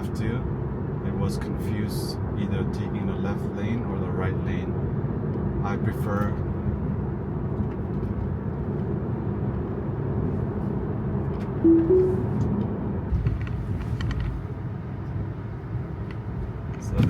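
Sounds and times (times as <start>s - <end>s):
two-note chime: 11.6s - 12.4s.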